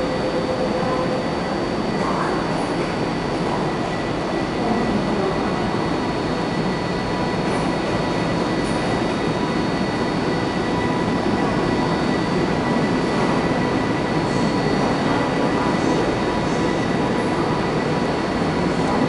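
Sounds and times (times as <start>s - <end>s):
train rumbling on track: 0.0s - 19.0s.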